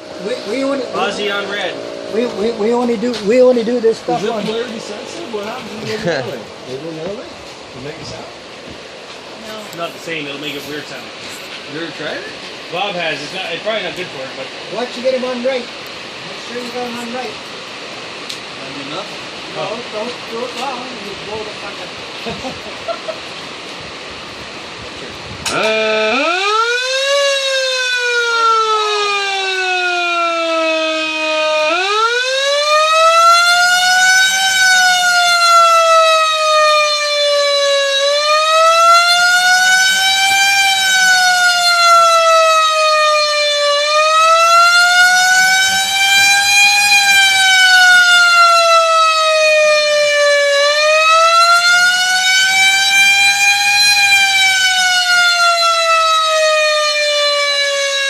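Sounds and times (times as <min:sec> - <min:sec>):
electric motor siren wailing: 0:25.5 - 0:58.0.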